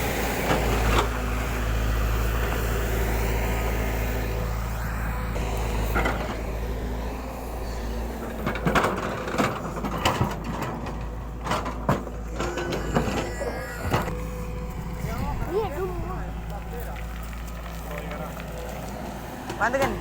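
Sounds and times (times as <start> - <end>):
excavator diesel engine running: 0.0 - 20.0.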